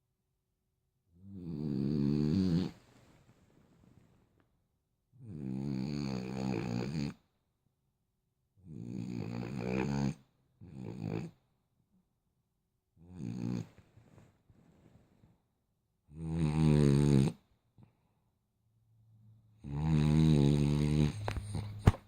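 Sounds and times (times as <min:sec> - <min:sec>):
dog snoring: 0:01.2 - 0:02.8, 0:05.2 - 0:07.2, 0:08.6 - 0:11.4, 0:13.0 - 0:13.9, 0:16.1 - 0:17.4, 0:19.6 - 0:22.0.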